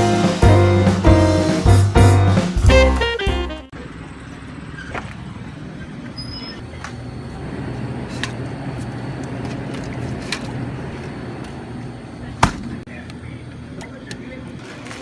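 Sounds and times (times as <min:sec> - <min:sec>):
road noise: 0:03.7 - 0:14.6.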